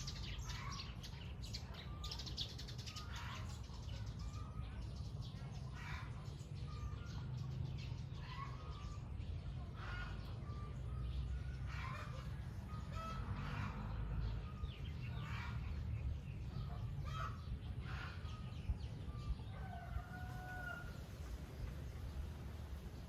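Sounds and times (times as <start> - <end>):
birds chirping: 0.0 - 23.0.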